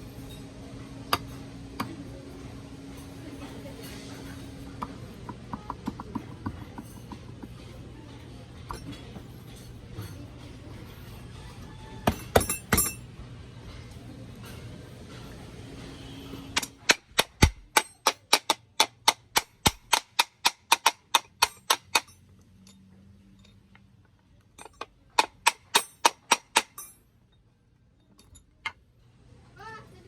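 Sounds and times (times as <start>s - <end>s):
hammer striking metal: 12.0s - 13.1s, 16.5s - 23.6s, 24.6s - 27.0s.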